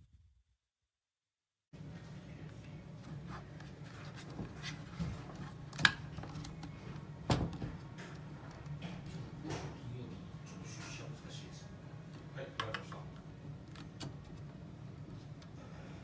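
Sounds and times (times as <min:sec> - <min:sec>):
clicks and knocks of handling: 0:12.2 - 0:14.4.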